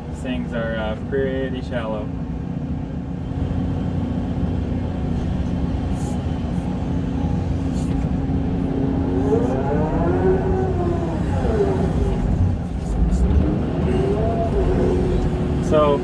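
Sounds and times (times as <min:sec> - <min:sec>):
excavator diesel engine drone: 0:00.0 - 0:16.0
pitched whine: 0:07.3 - 0:16.0.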